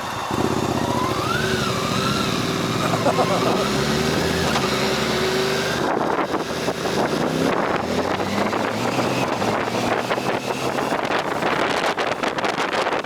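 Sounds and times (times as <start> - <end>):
motorcycle engine running: 0.0 - 13.0
wind buffeting microphone: 4.0 - 13.0.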